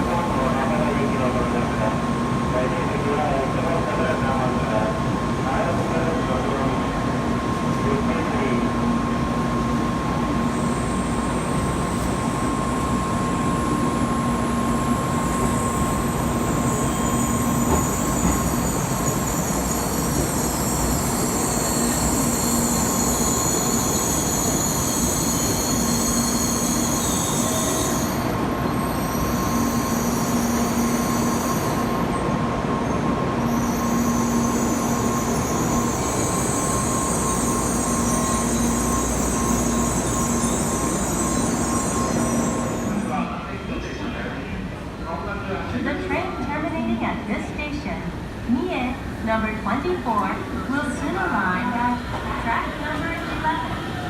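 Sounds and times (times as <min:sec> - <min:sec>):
train rumbling on rails: 0:00.0 - 0:54.0
wheel squeal: 0:33.4 - 0:43.0.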